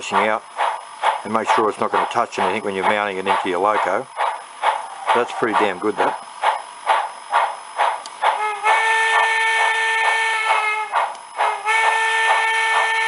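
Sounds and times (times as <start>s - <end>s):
steam locomotive chuffing: 0.0s - 13.0s
steam whistle blast: 8.2s - 13.0s.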